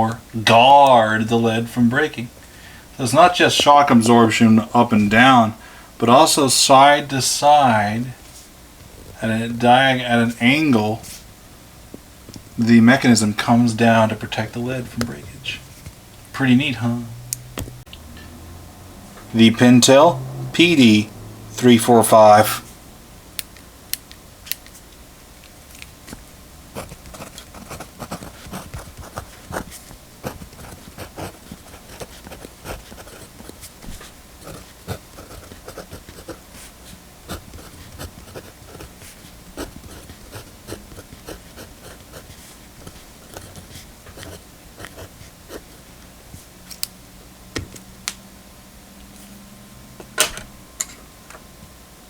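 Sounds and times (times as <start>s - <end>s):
pencil scratching on paper: 26.8s - 45.9s.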